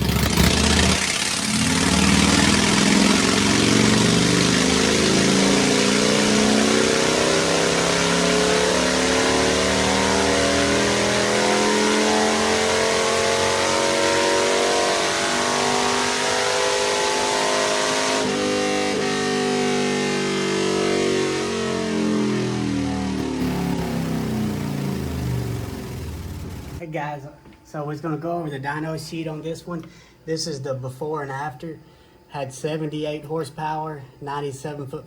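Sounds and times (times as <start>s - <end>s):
motorcycle engine revving: 0.0s - 26.8s.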